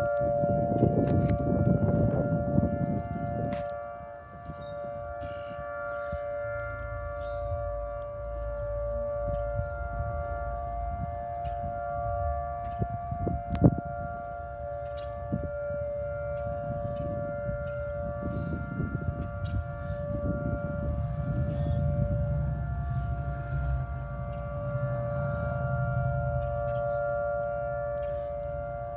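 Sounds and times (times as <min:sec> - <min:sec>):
warning siren steady tone: 0:00.0 - 0:28.9
low rumble: 0:16.6 - 0:28.9.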